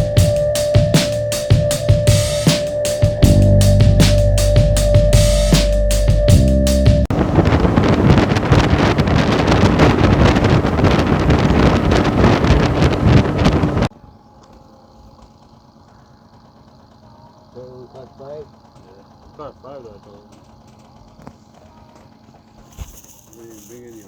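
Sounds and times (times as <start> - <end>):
wind buffeting microphone: 7.0 - 13.9.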